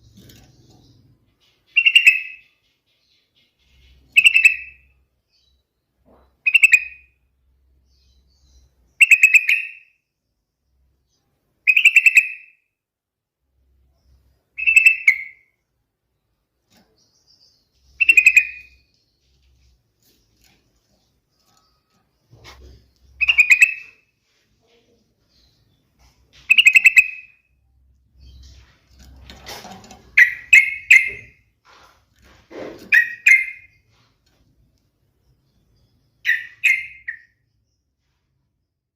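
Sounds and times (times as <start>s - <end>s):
bulbul calling: 14.6s - 15.4s, 16.9s - 18.9s, 21.4s - 24.0s, 26.4s - 27.5s, 30.0s - 31.5s, 32.6s - 33.8s, 36.2s - 37.4s.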